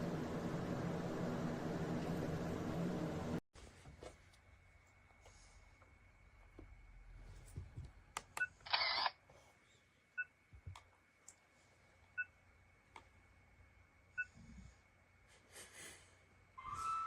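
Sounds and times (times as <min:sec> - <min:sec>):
camera shutter sound: 0:08.6 - 0:09.2.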